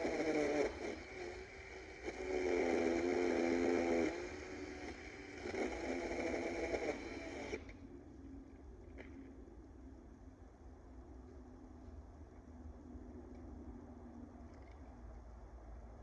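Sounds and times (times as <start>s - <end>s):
electric chainsaw motor whining: 0.0s - 7.8s.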